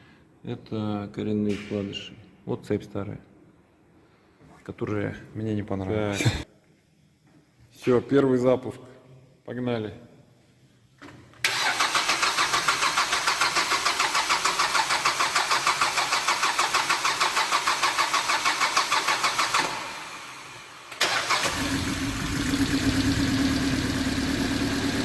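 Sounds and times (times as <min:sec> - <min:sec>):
starter motor cranking: 0:11.5 - 0:19.8
engine idling: 0:21.5 - 0:25.0.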